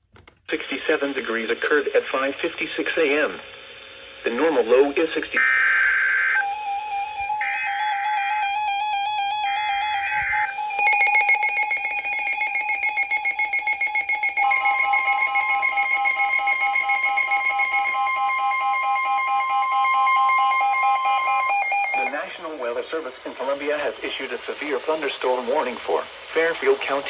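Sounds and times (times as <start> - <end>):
steady warning alarm tone: 4.3 - 22.3
weather radio alert beeps: 4.3 - 22.4
digital data burst: 7.7 - 22.2.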